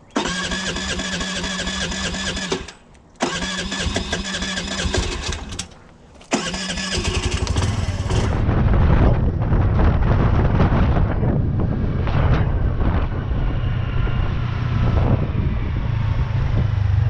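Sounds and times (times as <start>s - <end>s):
engine rumbling: 0.0s - 17.0s
electric starter cranking engine: 0.1s - 8.4s.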